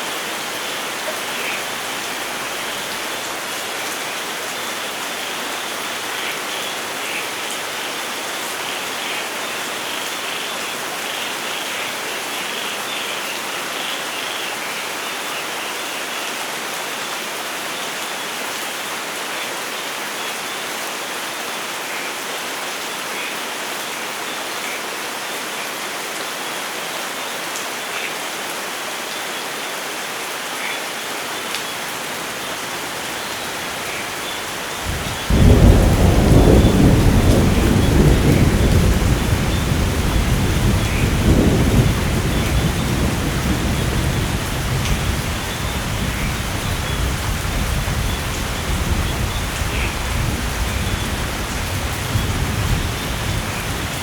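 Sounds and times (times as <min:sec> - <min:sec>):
steady rain falling: 0:00.0 - 0:54.0
thunder rumble: 0:33.4 - 0:54.0.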